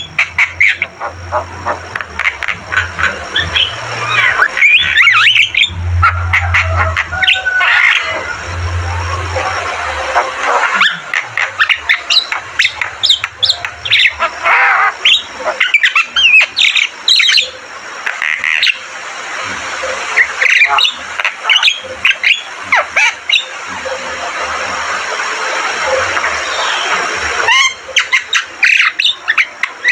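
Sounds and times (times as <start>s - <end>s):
mynas squawking and whistling: 0.0s - 18.9s, 20.0s - 24.4s, 25.7s - 29.9s.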